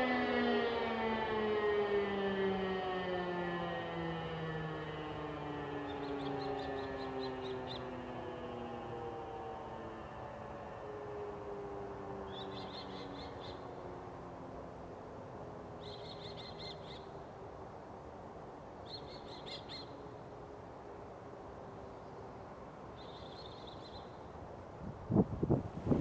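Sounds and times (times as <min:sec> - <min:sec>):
distant sirens winding down: 0:00.0 - 0:26.0
songbird trilling: 0:06.0 - 0:07.9, 0:12.3 - 0:13.6, 0:15.8 - 0:17.1, 0:18.9 - 0:19.9.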